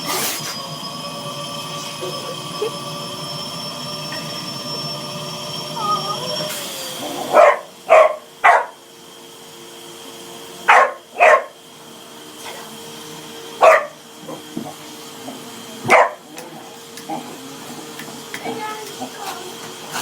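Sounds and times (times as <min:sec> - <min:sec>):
vacuum cleaner humming: 0:00.0 - 0:20.0
dog barking: 0:07.2 - 0:08.8, 0:10.7 - 0:11.6, 0:13.6 - 0:14.0, 0:15.9 - 0:16.4.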